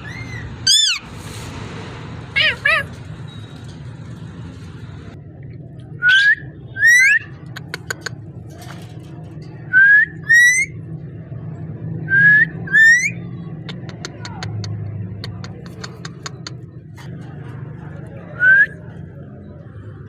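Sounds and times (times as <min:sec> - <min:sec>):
parakeet whistling: 0:00.0 - 0:01.1, 0:06.0 - 0:07.3, 0:09.8 - 0:10.8, 0:12.1 - 0:13.2.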